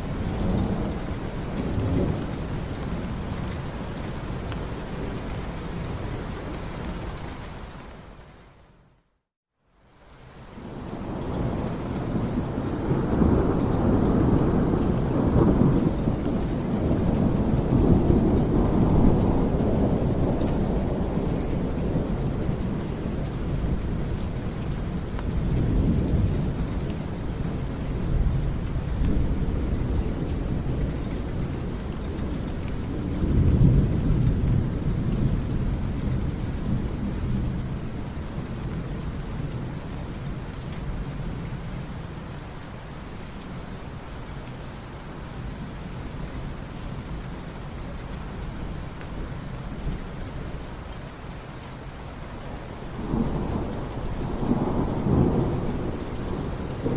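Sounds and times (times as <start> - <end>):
steady rain: 0.0 - 56.9
rolling thunder: 10.6 - 24.2, 52.8 - 56.9.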